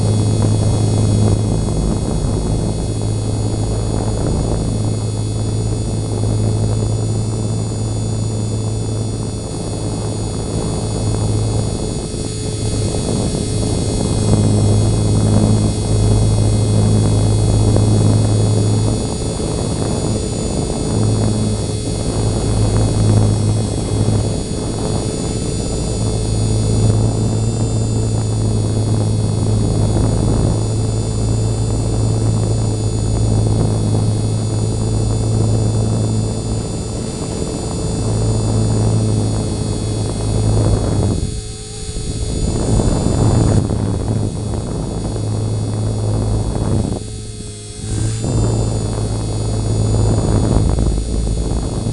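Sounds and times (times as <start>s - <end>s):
rc helicopter motor whine: 0.0s - 51.9s.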